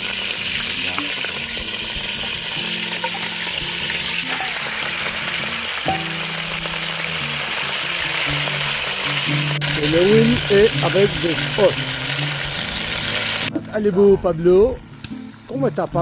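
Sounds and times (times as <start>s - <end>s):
meat sizzling in hot oil: 0.0s - 13.5s.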